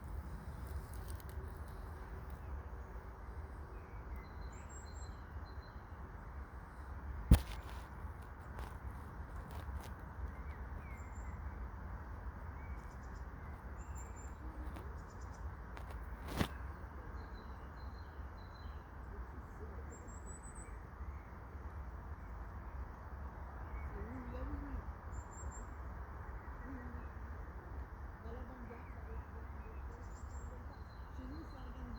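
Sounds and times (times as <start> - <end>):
low background noise: 0.0 - 31.9
faint bird chirps: 12.5 - 21.5.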